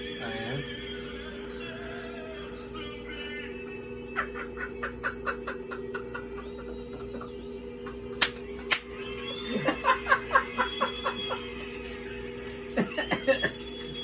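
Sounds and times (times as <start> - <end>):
person giggling: 2.8 - 8.2, 9.4 - 11.9, 12.7 - 14.0.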